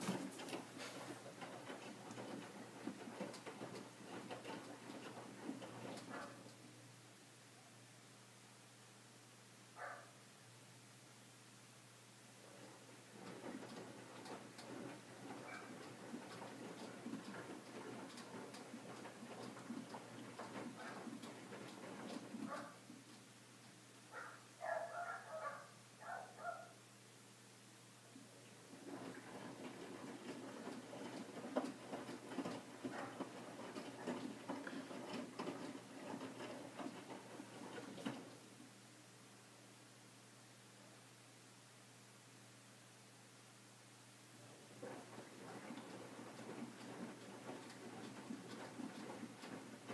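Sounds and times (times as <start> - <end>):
washing machine drum sloshing: 0.0 - 6.4, 13.1 - 23.2, 28.7 - 38.5, 44.7 - 49.9
faint steady hum: 0.0 - 49.9.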